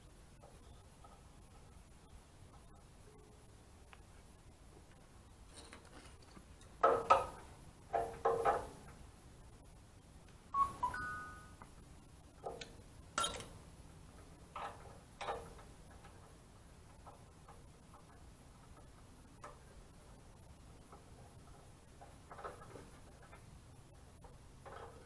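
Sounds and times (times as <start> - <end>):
two-tone electronic beep: 10.6 - 11.6
metal tools clinking: 13.2 - 13.5.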